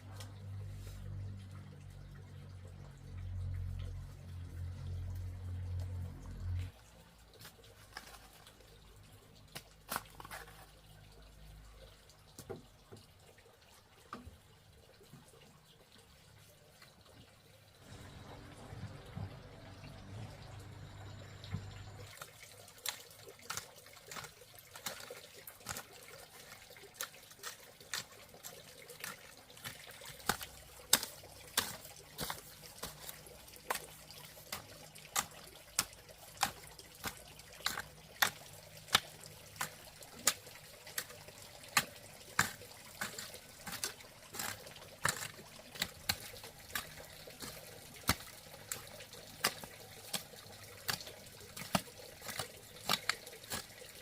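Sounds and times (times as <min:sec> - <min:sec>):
sharp water drips: 0:00.0 - 0:54.0
water trickling: 0:00.0 - 0:54.0.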